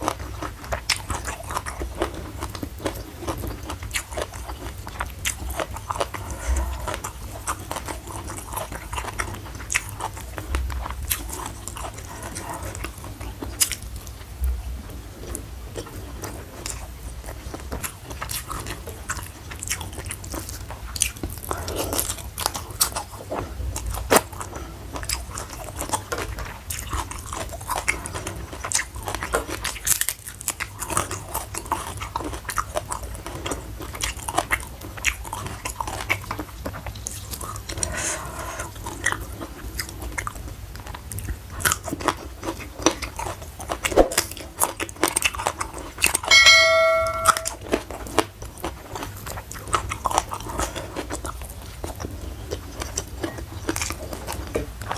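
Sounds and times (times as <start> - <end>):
person chewing crunchy food: 0.0 - 14.1, 15.2 - 37.9, 38.7 - 46.3, 48.7 - 54.9.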